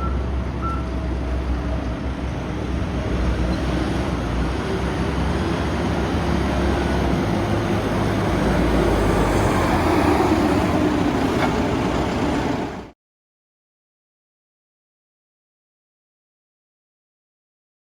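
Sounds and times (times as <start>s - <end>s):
diesel engine running: 0.0s - 12.9s.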